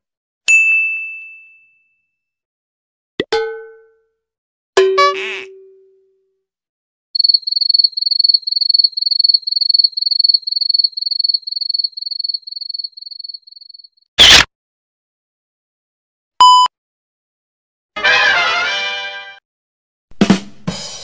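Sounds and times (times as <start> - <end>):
cricket chirping: 7.2 - 14.0.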